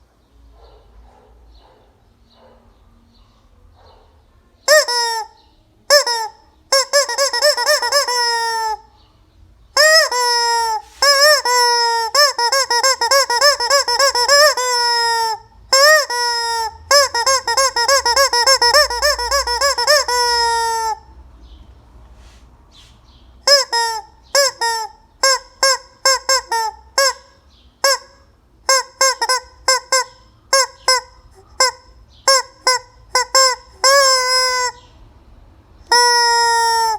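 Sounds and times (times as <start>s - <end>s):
rubber chicken toy squawking: 4.7s - 8.9s, 9.8s - 21.1s, 23.4s - 34.9s, 35.8s - 36.9s.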